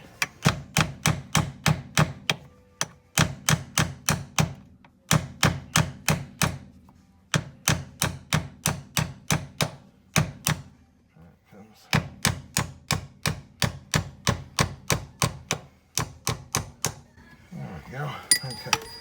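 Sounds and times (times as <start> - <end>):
hammer tapping on a punch: 0.2 - 6.7, 7.3 - 10.7, 11.9 - 17.0.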